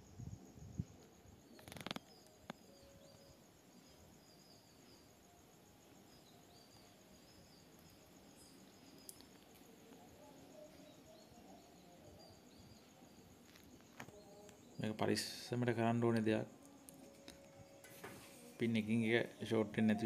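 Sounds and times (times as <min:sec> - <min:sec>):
faint bird chirps: 0:00.0 - 0:20.0
brief rustle: 0:01.6 - 0:02.2.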